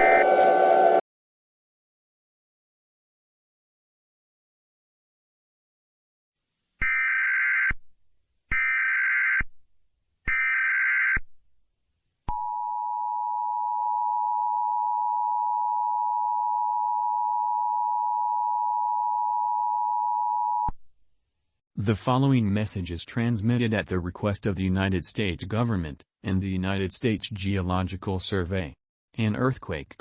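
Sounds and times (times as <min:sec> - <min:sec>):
two-tone attention signal: 0:00.0 - 0:01.0.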